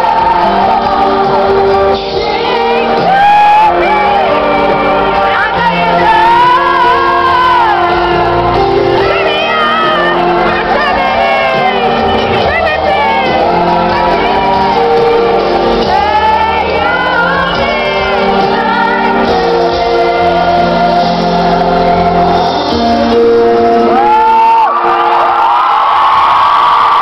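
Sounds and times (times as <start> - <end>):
woman singing: 0.0 - 24.0
sustained keyboard chords: 0.0 - 25.4.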